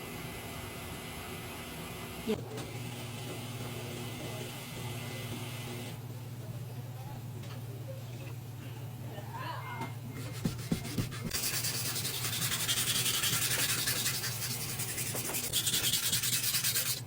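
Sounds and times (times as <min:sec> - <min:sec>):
knife grinding on sharpener: 0:11.2 - 0:17.0.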